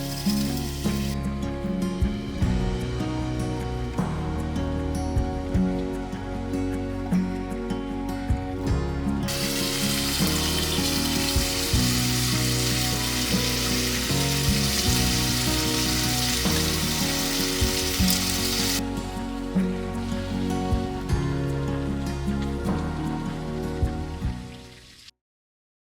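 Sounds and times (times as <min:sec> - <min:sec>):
steady hissing noise: 0:00.0 - 0:01.4, 0:09.3 - 0:25.1
background music: 0:00.0 - 0:25.1.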